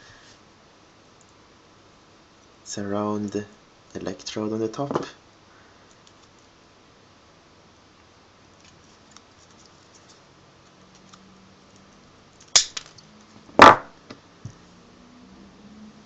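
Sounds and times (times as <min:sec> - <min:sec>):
loud snap: 0:12.6 - 0:12.9, 0:13.6 - 0:14.0.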